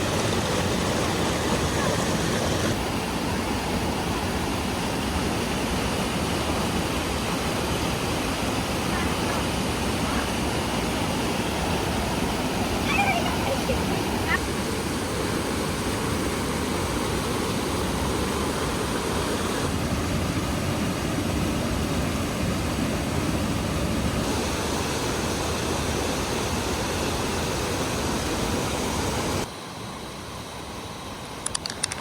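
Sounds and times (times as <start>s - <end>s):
waterfall rushing: 0.0s - 19.8s, 21.6s - 29.5s
sharp clicks: 31.4s - 32.0s.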